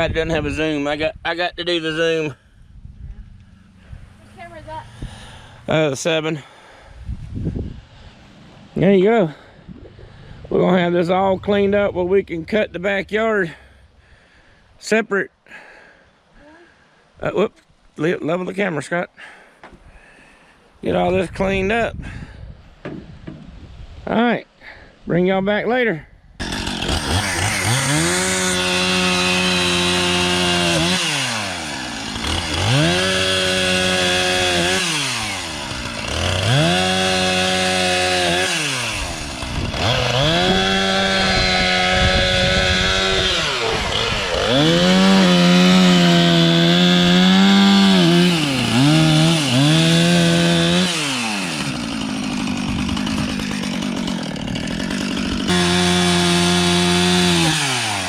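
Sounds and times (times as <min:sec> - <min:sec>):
chainsaw revving: 0:26.4 - 0:58.0.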